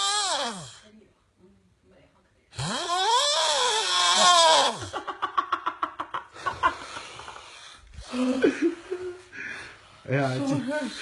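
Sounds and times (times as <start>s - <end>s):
loud snore: 0.0s - 0.9s, 2.6s - 5.0s.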